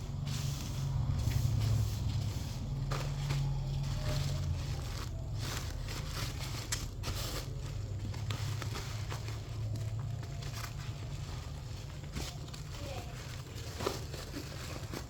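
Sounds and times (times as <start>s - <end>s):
plastic wrap crinkling: 0.0s - 15.0s.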